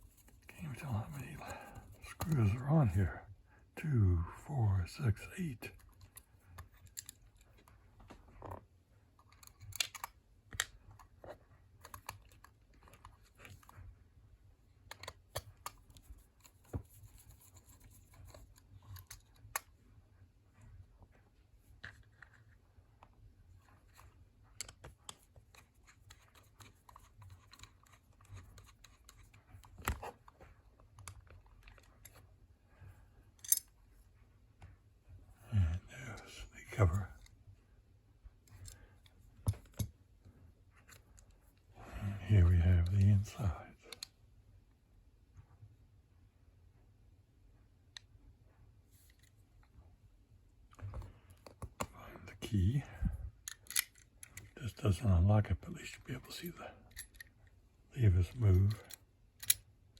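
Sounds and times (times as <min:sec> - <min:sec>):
screwdriver clicks and taps: 0:09.2 - 0:11.1, 0:53.5 - 0:54.5, 0:58.9 - 0:59.6.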